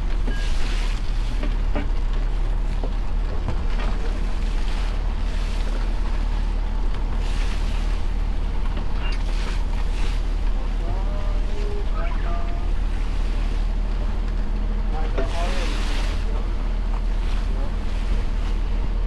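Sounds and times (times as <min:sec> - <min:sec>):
boat engine low rumble: 0:00.0 - 0:19.0
water noise: 0:00.0 - 0:19.0
wind buffeting microphone: 0:00.9 - 0:19.0.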